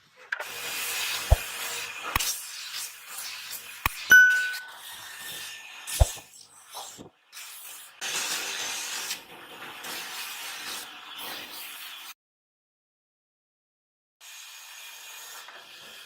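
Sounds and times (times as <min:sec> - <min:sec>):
hissing rubbing noise: 0:06.0 - 0:06.3.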